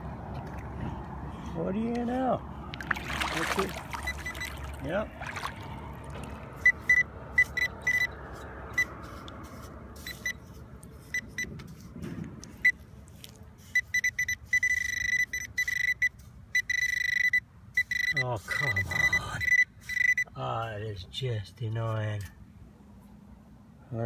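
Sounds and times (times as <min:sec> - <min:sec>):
metal detector beeping: 0:04.0 - 0:04.6, 0:06.6 - 0:08.2, 0:08.8 - 0:09.0, 0:10.0 - 0:11.5, 0:12.6 - 0:12.8, 0:13.6 - 0:20.4.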